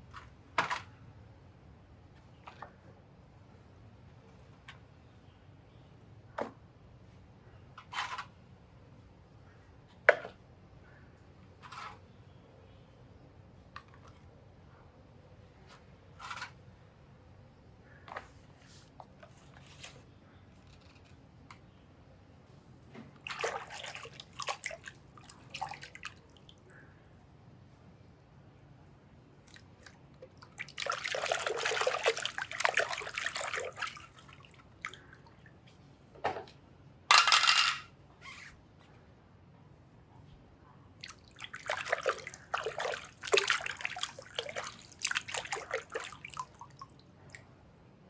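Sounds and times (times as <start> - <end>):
water splashing and dripping: 23.2 - 26.6, 29.4 - 35.2, 41.0 - 47.4.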